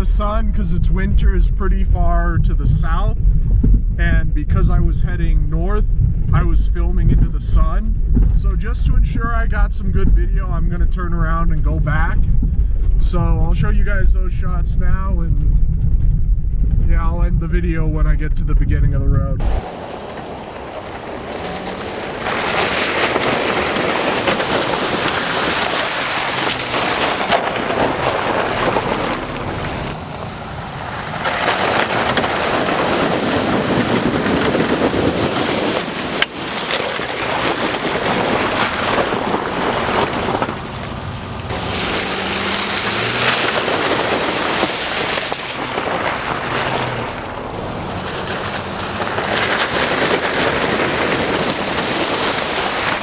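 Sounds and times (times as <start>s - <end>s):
off-road vehicle driving through mud: 0.0s - 53.0s.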